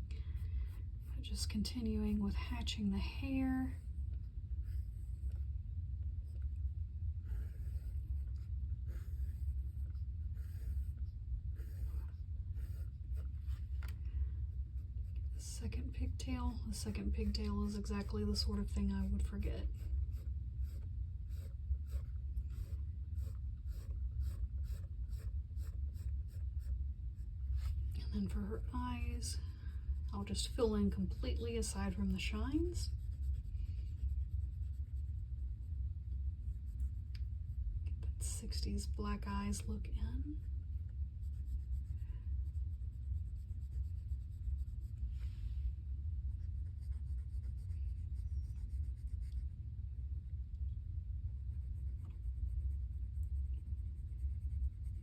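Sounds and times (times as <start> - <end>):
low hum: 0.0 - 55.0
steady low rumble: 0.0 - 55.0
pencil scratching on paper: 7.2 - 35.6, 38.5 - 45.1, 46.2 - 49.5, 51.4 - 55.0.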